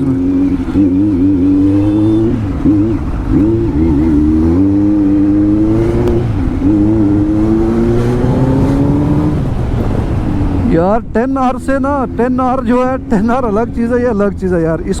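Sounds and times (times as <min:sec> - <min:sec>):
motorcycle engine revving: 0:00.0 - 0:10.8.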